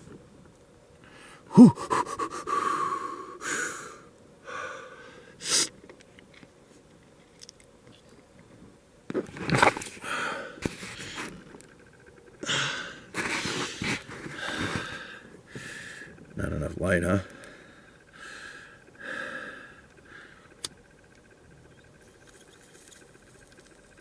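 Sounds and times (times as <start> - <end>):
man breathing out hard: 1.1 - 5.7, 10.0 - 11.3, 12.4 - 16.2, 17.3 - 20.5
clicks and handling noises: 5.8 - 10.0.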